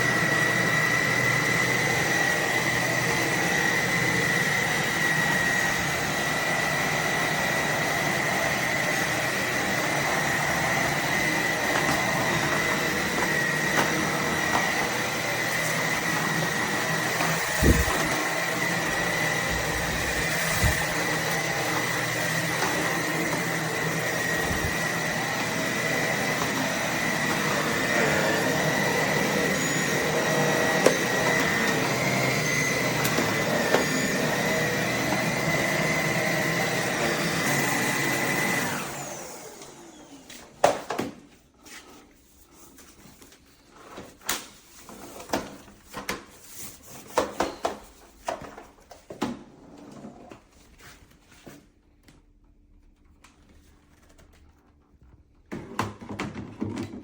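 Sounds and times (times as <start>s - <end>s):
vacuum winding down: 0.0s - 40.4s
vacuum cleaner whining: 0.0s - 51.7s, 55.5s - 57.0s.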